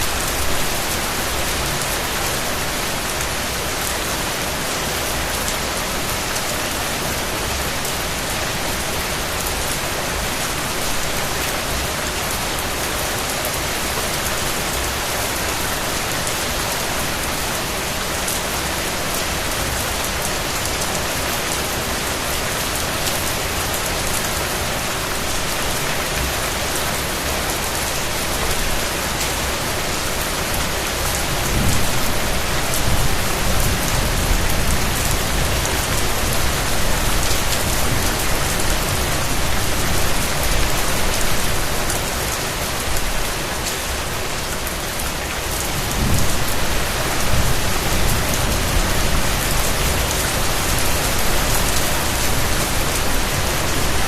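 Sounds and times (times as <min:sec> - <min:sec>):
steady rain falling: 0:00.0 - 0:54.0
low rumble of thunder: 0:31.4 - 0:35.8, 0:45.8 - 0:49.6.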